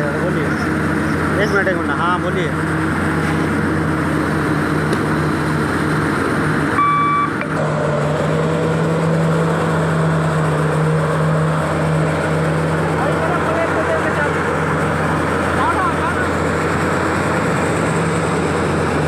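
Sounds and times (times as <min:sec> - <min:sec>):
machine engine running: 0:00.0 - 0:19.0
short beep: 0:06.8 - 0:07.4.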